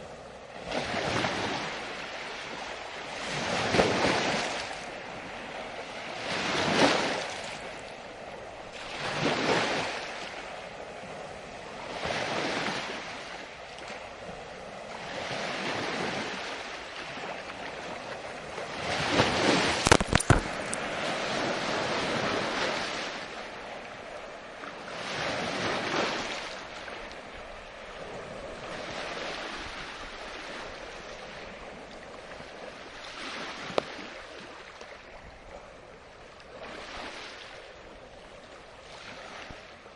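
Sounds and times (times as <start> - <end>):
sea waves breaking: 0.0 - 39.9
small click: 19.8 - 20.8.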